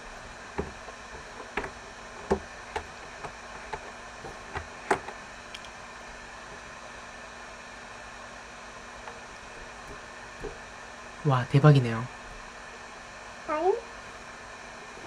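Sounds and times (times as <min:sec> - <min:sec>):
steady background hiss: 0:00.0 - 0:15.0
light taps: 0:09.8 - 0:10.7.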